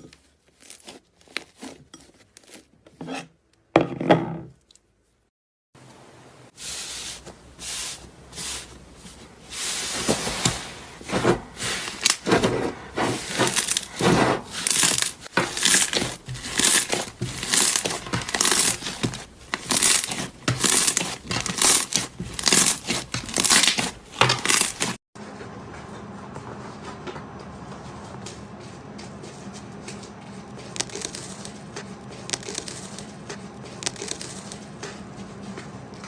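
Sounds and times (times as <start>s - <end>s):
slime crackling and crunching: 13.0s - 25.0s, 32.3s - 33.0s, 33.8s - 34.6s.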